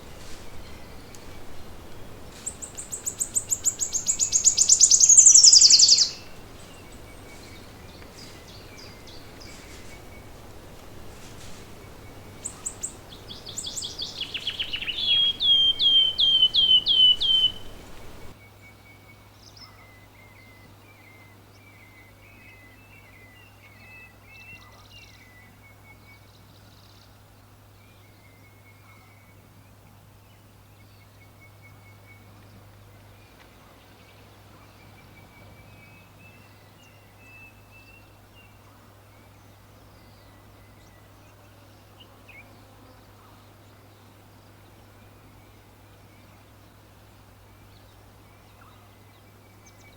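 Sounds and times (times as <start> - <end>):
faint bird chirps: 0.0 - 18.4
bird singing rapid descending notes: 0.5 - 10.7, 11.6 - 18.3.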